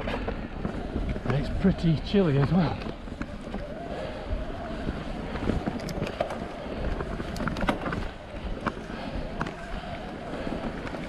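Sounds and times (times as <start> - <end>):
bike clicks and rattles: 0.0 - 11.0
wind buffeting microphone: 0.0 - 11.0.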